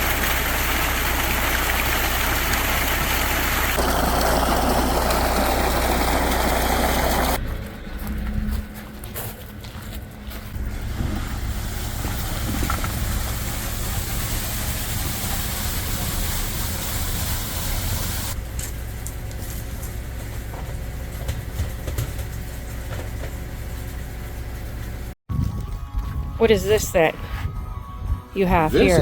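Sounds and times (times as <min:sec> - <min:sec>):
engine idling: 0:00.0 - 0:25.2
hiss: 0:11.1 - 0:18.4.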